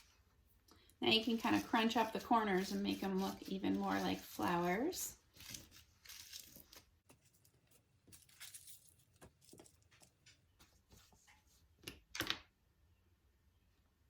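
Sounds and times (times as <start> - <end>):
tissue paper crinkling: 1.1 - 9.6.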